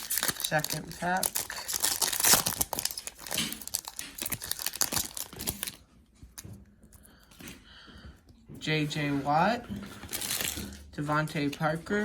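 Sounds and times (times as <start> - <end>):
wrapper tearing and crinkling: 0.0 - 5.8, 10.1 - 10.8.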